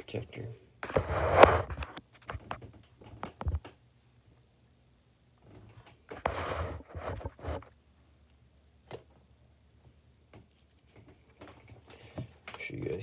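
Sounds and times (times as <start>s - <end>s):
rustling at a table: 0.8s - 4.2s, 5.4s - 7.8s.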